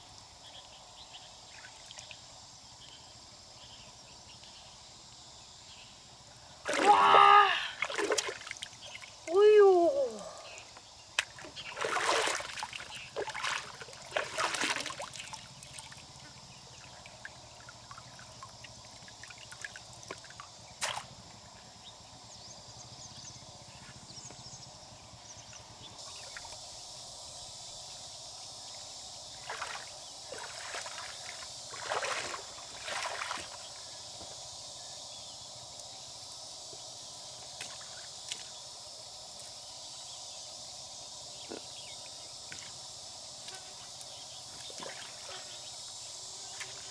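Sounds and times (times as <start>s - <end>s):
water sloshing and trickling: 6.7s - 9.3s, 11.2s - 21.4s, 29.3s - 34.2s, 43.4s - 46.9s
steady high hiss: 24.1s - 44.5s.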